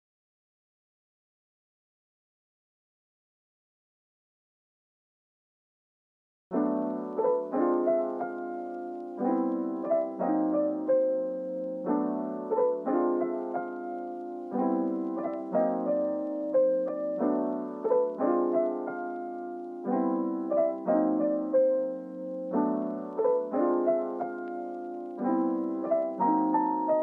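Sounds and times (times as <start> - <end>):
gentle lo-fi piano tune: 6.5 - 27.0.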